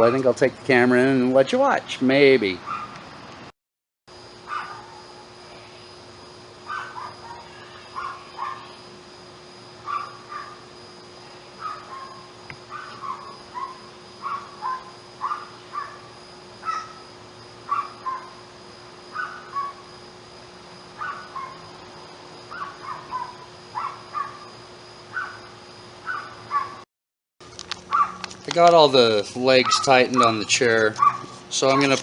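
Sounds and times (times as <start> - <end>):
faint steady hum: 4.1 - 26.8.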